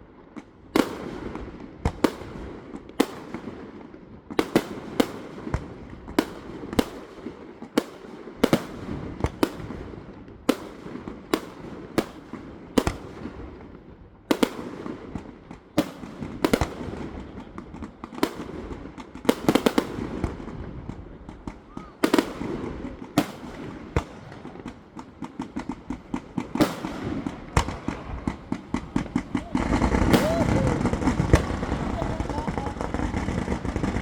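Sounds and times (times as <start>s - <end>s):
fireworks bangs: 4.4s - 34.0s
fireworks crackle: 15.1s - 34.0s.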